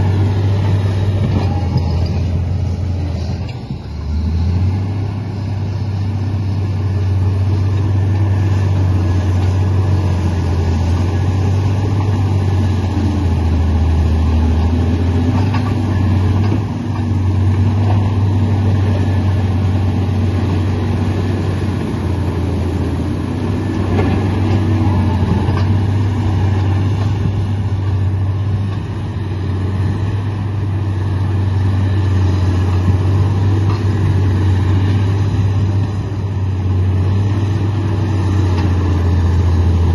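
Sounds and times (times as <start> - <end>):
bulldozer diesel engine drone: 0.0 - 39.9.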